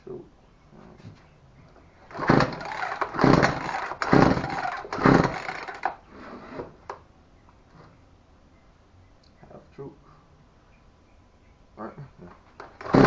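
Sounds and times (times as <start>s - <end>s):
chainsaw engine cranking: 2.1s - 6.0s, 12.6s - 13.0s
chainsaw recoil starter pulls: 2.1s - 6.0s, 12.6s - 13.0s.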